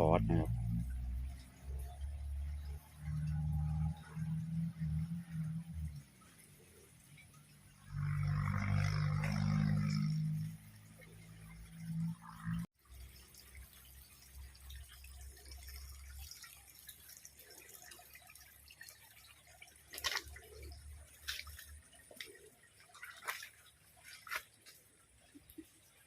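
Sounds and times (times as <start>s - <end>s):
water dripping: 0.0s - 26.0s.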